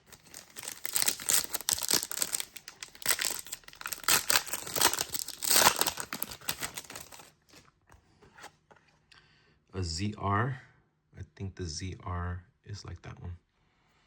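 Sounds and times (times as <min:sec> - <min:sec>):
wrapper crinkling and tearing: 0:00.0 - 0:07.4.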